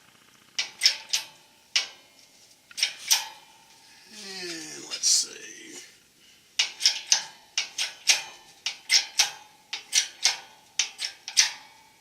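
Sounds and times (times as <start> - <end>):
shop press metallic clicks: 6.6 - 11.6.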